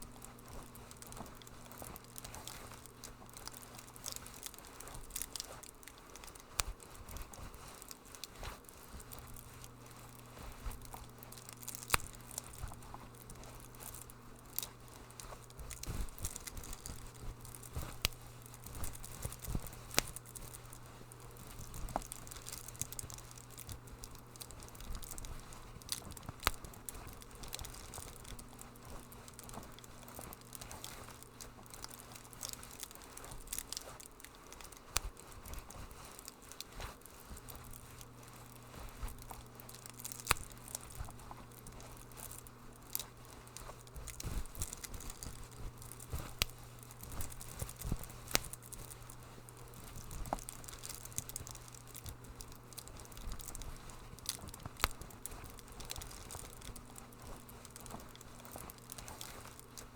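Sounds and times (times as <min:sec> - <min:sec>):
low steady hum: 0:00.0 - 0:59.9
wood fire crackling: 0:00.0 - 0:59.9.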